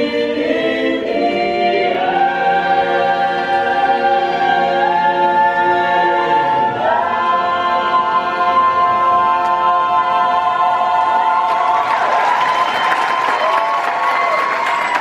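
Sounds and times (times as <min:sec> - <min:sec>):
vocal ensemble singing chords: 0:00.0 - 0:12.8
applause: 0:11.5 - 0:15.0.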